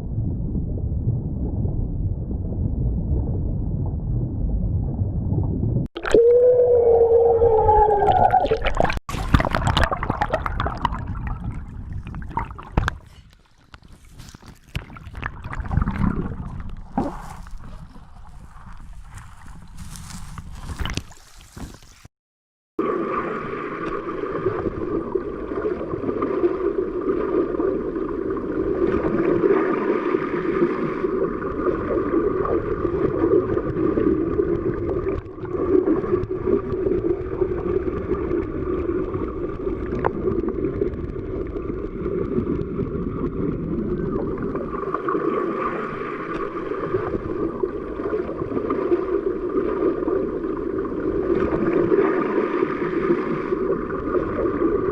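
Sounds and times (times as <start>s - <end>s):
muffled underwater water rush: 0.0s - 22.1s, 22.8s - 54.9s
bubbling gurgles: 0.2s - 19.9s, 22.8s - 54.9s.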